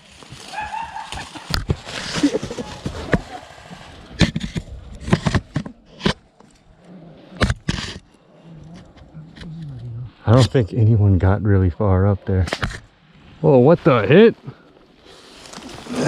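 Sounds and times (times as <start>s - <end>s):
sharp cracks and knocks: 4.2s - 6.6s, 12.4s - 12.9s.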